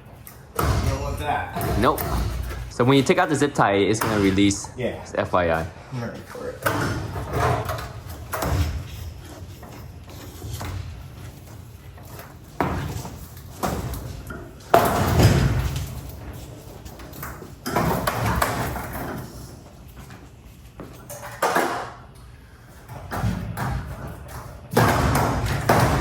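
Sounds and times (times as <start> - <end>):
metallic knocks and thuds: 0.5 - 3.1, 6.6 - 19.3, 22.9 - 26.0.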